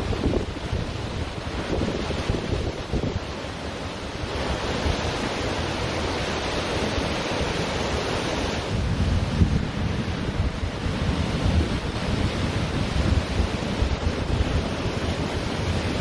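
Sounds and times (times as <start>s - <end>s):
wind buffeting microphone: 0.0s - 3.5s, 8.4s - 16.0s
surf washing onto beach: 0.0s - 16.0s.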